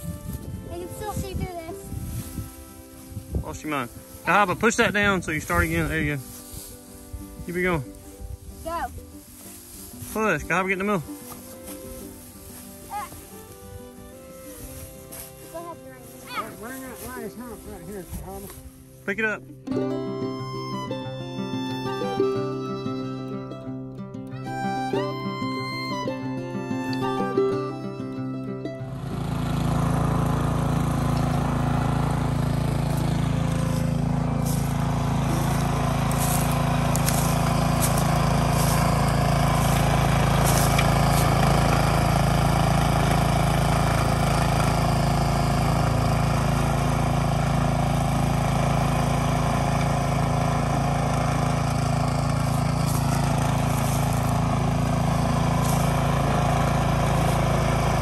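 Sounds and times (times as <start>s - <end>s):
small tractor engine running: 24.3s - 58.0s.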